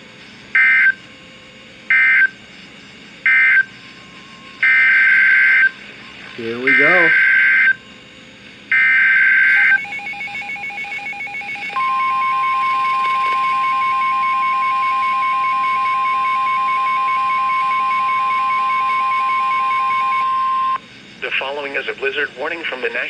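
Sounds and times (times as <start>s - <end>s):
steady alarm tone: 0.2s - 20.9s
screeching data burst: 3.2s - 8.0s, 8.6s - 20.9s
rapidly pulsing alert beeps: 4.6s - 7.8s, 8.8s - 20.8s.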